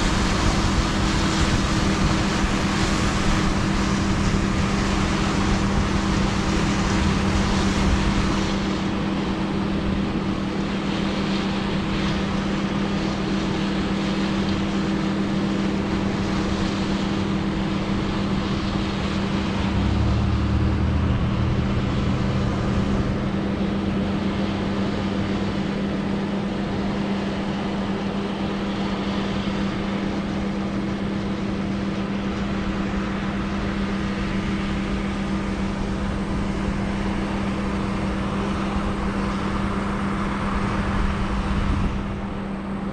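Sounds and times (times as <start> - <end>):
machinery engine drone: 0.0 - 42.9
deep low rumble: 17.1 - 26.1.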